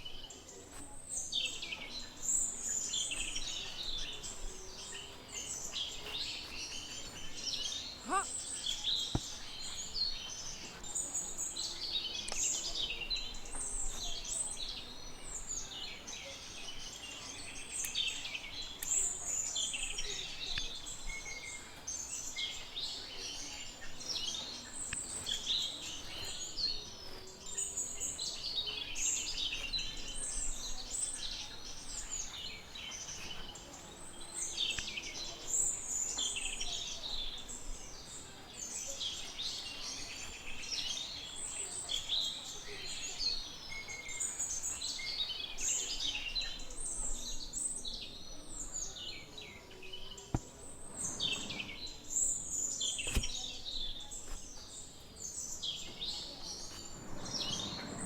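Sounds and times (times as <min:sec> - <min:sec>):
small birds chirping and twittering: 0:00.0 - 0:58.0.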